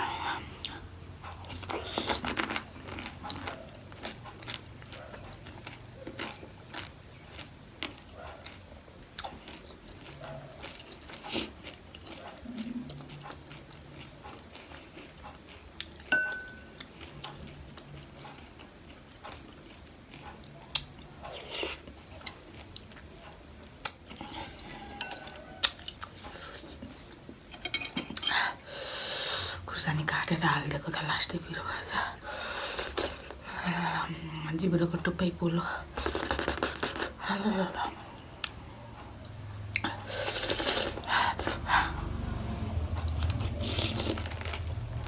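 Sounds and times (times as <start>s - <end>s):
person chewing: 0.0s - 29.6s, 30.4s - 34.7s, 35.9s - 45.0s
small crunches: 43.6s - 45.0s.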